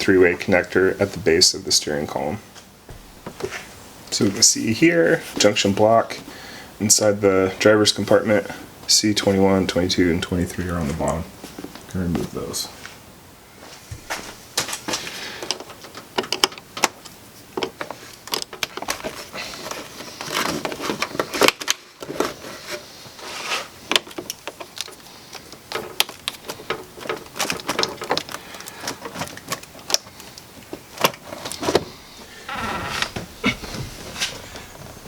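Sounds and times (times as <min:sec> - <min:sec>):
hard plastic clicking and rattling: 0:23.9 - 0:32.3.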